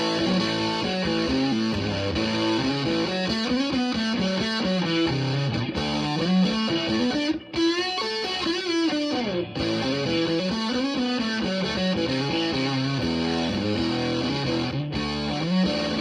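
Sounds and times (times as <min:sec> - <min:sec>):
distorted electric guitar riff: 0:00.0 - 0:16.0.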